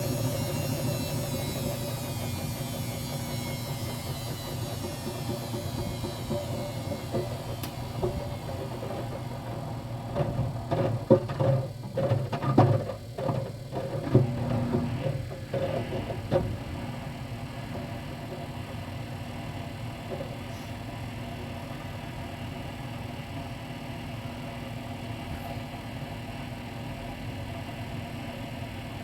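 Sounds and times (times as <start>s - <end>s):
knocks and thumps in drum: 0.0s - 18.7s
washing machine motor humming: 0.0s - 23.3s.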